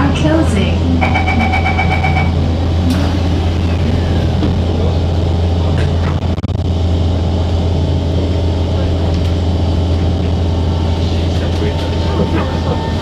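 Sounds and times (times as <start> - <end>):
train rumble and hum: 0.0 - 13.0
wheel and track noise: 7.3 - 13.0.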